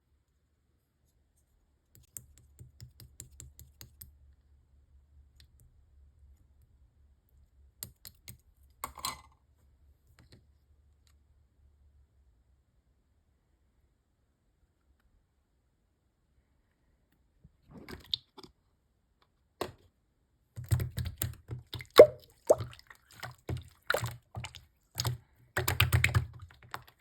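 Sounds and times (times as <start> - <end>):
slime clicking and popping: 20.7 - 22.7, 25.0 - 26.9.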